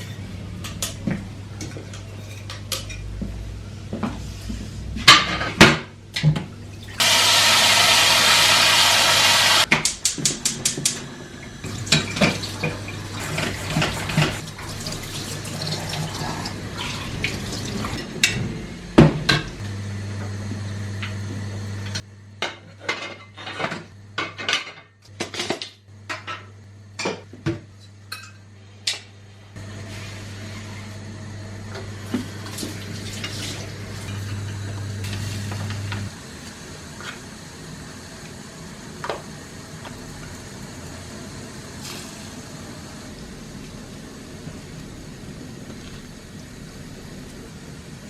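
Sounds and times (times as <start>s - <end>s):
pots and pans clattering: 9.7s - 18.4s.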